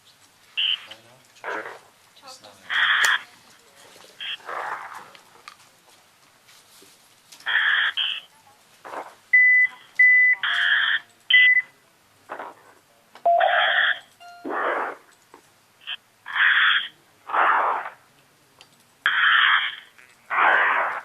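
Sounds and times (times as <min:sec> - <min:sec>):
telephone-like radio noise bursts: 0:00.6 - 0:01.8, 0:02.7 - 0:03.3, 0:04.2 - 0:05.0, 0:07.5 - 0:08.3, 0:08.9 - 0:11.6, 0:13.3 - 0:15.1, 0:15.8 - 0:18.0, 0:19.1 - 0:21.0
short high beeps: 0:13.3 - 0:13.6, 0:14.2 - 0:14.6.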